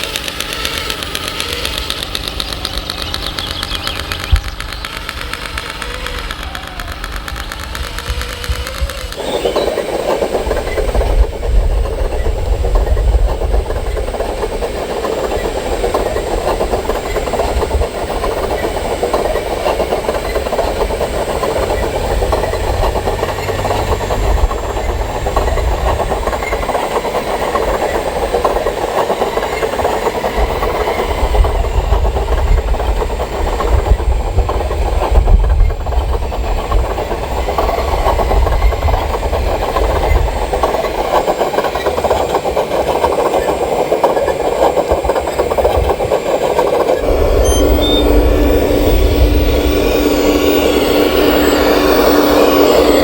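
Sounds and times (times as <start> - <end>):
model motors whirring: 0.0 - 53.0
low rumble: 47.0 - 53.0.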